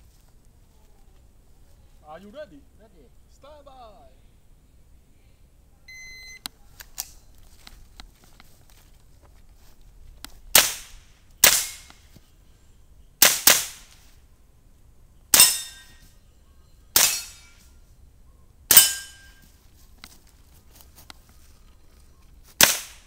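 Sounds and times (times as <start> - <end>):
rifle shots: 10.5 - 11.9, 13.2 - 13.9, 15.3 - 15.8, 17.0 - 17.5, 22.6 - 23.0.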